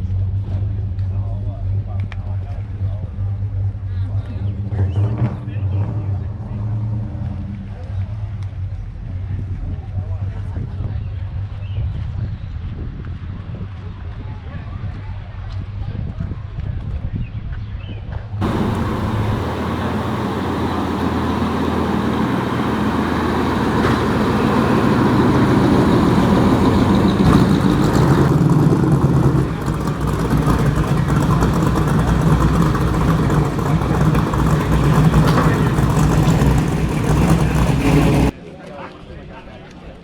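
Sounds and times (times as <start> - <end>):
car engine humming: 18.4 - 38.3.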